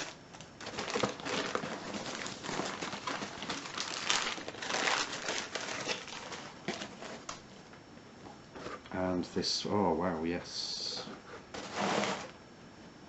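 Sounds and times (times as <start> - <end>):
plastic packaging crinkling: 0.0 - 7.4.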